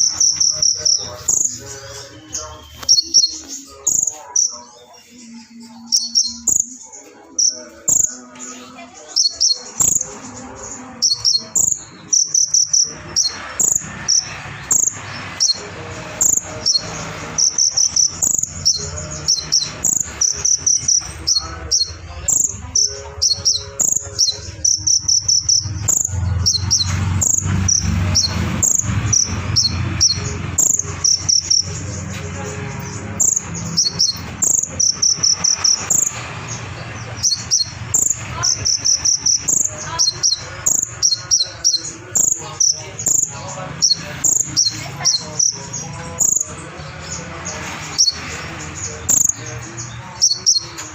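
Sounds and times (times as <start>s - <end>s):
bird singing high chirps and trills: 0.0s - 50.9s
cricket-like chirping phrases: 0.0s - 50.9s.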